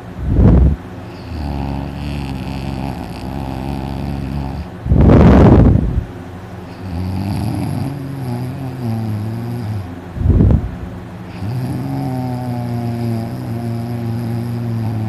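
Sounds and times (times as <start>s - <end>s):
person snoring loudly: 1.1s - 5.8s, 6.7s - 10.0s, 11.3s - 15.0s.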